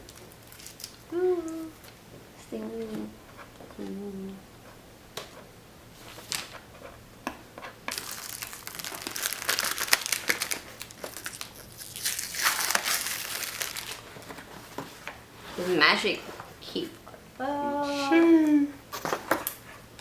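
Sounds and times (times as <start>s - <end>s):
wrapping tearing and crinkling: 0.0s - 1.1s, 7.9s - 14.5s
packaging clicks: 7.9s - 14.0s.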